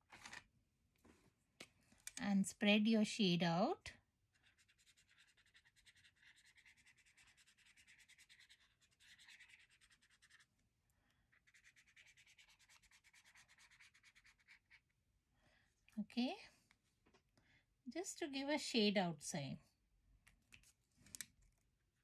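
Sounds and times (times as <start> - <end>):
brush pen scratching on card: 4.3 - 10.6, 11.3 - 14.8.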